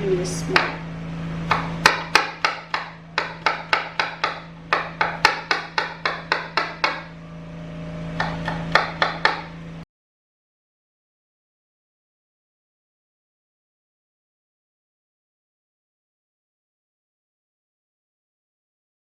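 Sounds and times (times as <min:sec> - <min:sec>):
knife chopping on cutting board: 0:01.4 - 0:07.1, 0:08.1 - 0:09.5.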